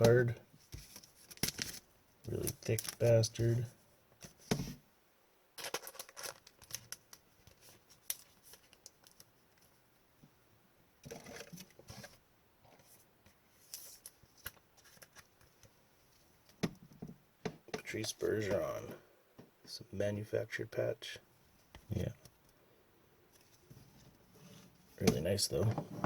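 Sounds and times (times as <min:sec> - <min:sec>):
plastic card sleeves rustling: 0:00.7 - 0:03.6, 0:05.6 - 0:09.7.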